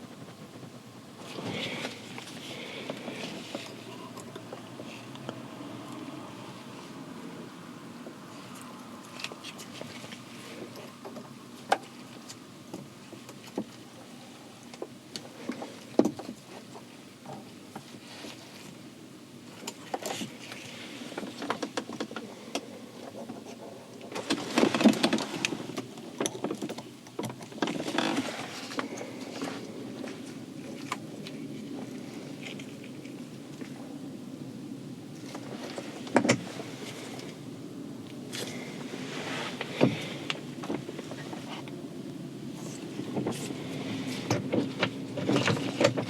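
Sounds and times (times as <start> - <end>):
rattling and rustling: 0.0 - 5.1, 19.5 - 33.9, 42.5 - 46.0.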